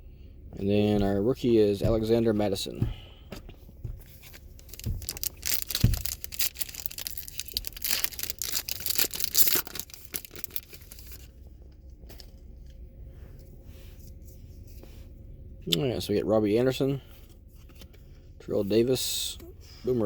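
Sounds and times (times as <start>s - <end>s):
wrapper tearing and crinkling: 4.2s - 11.3s.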